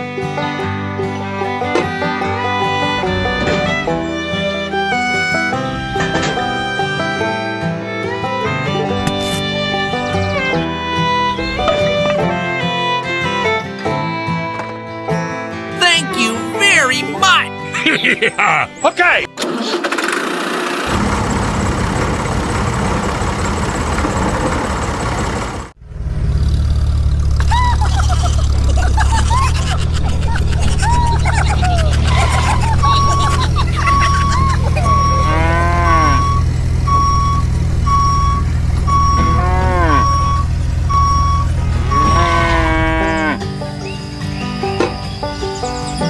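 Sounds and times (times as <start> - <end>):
engine running: 0.0 - 13.8, 19.4 - 44.2
music with held notes: 0.0 - 18.7, 32.0 - 46.0
vehicle reversing alarm beeps: 32.2 - 43.2
cow mooing: 34.9 - 37.3, 38.9 - 43.5.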